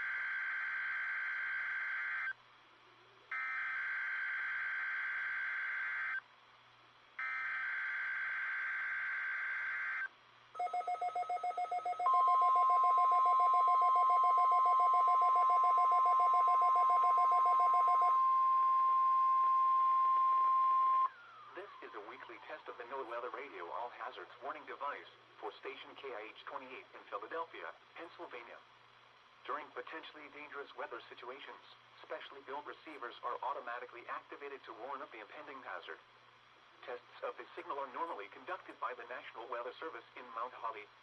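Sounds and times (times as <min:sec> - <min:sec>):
steady warning alarm tone: 0:00.0 - 0:02.4, 0:03.3 - 0:06.2, 0:07.2 - 0:21.8
warbling digital data tones: 0:07.2 - 0:21.8
rapid electronic beeping: 0:10.6 - 0:21.8.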